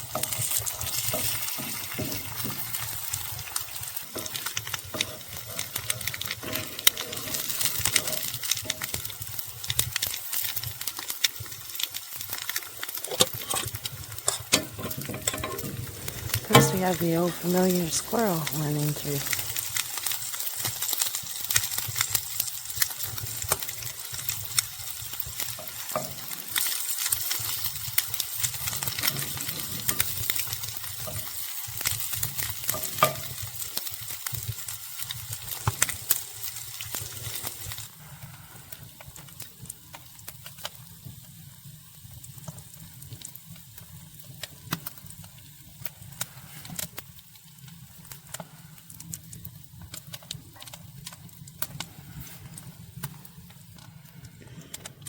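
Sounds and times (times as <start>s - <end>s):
sausages sizzling in a frying pan: 0.0s - 55.0s.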